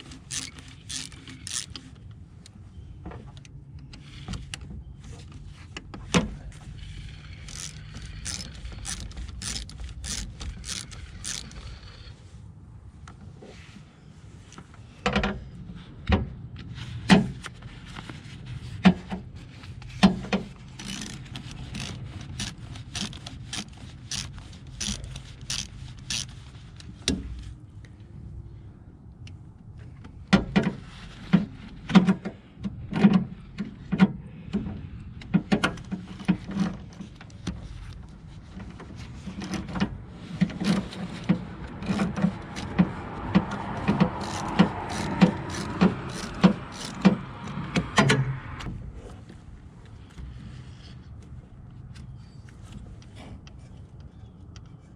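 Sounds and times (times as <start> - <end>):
hand tools clicking and scraping metal: 0.0 - 2.1, 6.8 - 12.0, 19.7 - 27.2, 38.6 - 48.0.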